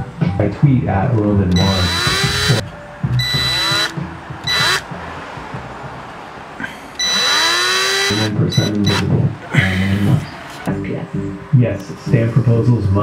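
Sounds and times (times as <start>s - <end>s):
power tool motor whine: 1.5s - 2.6s, 3.2s - 4.9s, 7.0s - 9.0s.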